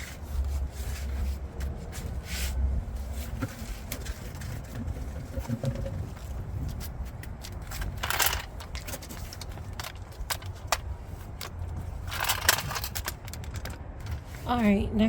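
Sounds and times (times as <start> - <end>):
metal parts rattling scrapes: 7.4 - 14.4
metal parts clinking: 7.6 - 13.8.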